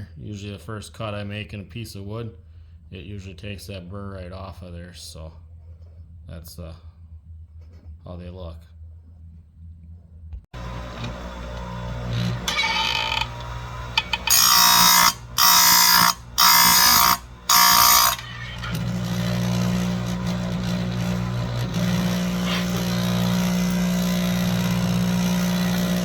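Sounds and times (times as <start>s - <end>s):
grinder motor hum: 10.6s - 26.0s
high grinding on metal: 10.6s - 26.0s.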